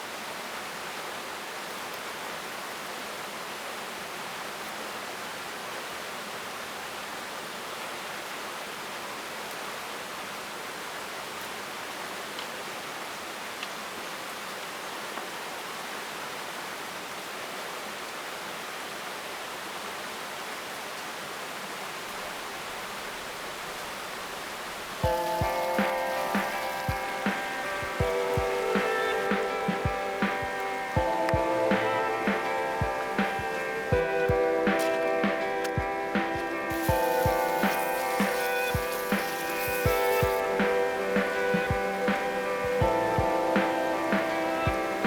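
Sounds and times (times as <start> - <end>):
running water: 0.0 - 45.0.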